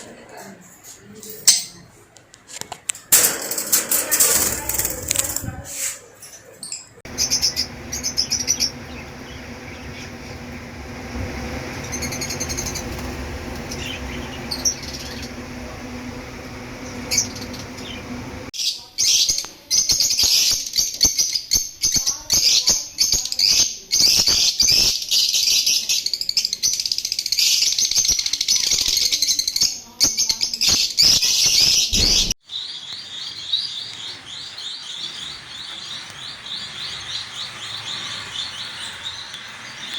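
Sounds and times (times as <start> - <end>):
parrots chirping and chattering: 4.3 - 18.5
background hum: 7.1 - 18.5.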